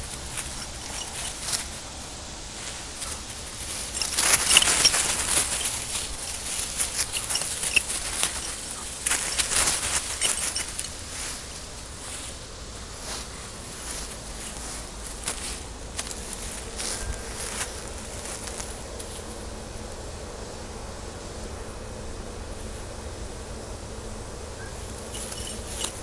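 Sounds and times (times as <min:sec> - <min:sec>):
rustling and scuffling: 0:00.0 - 0:19.5, 0:24.8 - 0:26.0.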